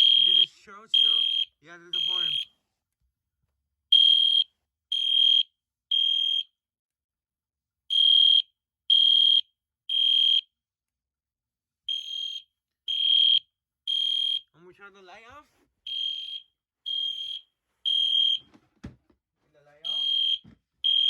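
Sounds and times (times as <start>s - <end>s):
fire alarm horn beeping: 0.0s - 2.6s, 3.9s - 6.5s, 7.9s - 10.5s, 11.9s - 14.6s, 15.9s - 18.6s, 19.8s - 21.0s.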